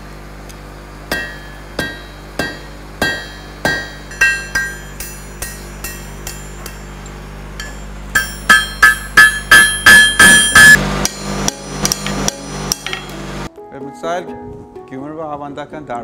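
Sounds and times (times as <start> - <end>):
hammer striking metal on anvil: 1.1 - 13.2.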